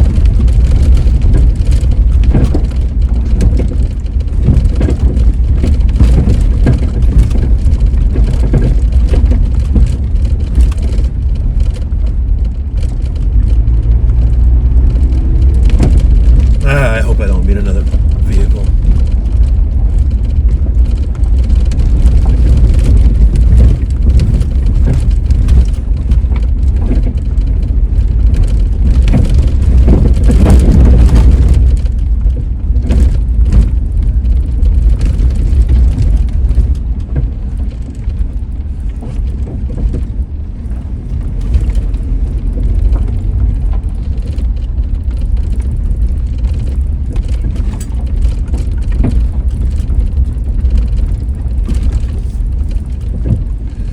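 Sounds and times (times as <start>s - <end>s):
vehicle driving on rough road: 0.0s - 53.9s.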